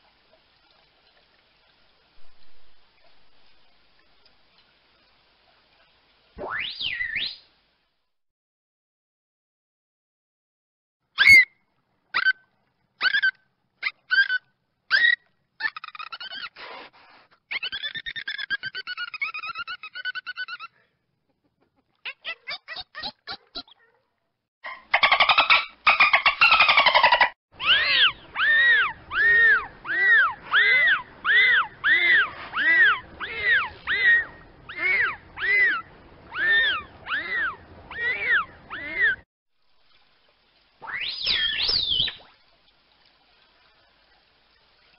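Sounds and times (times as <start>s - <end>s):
dolphin chirping whistles: 6.4s - 7.4s, 11.2s - 11.5s, 40.8s - 42.2s
dolphin whistles: 6.4s - 7.4s, 11.2s - 11.5s, 25.2s - 39.2s, 40.8s - 42.2s.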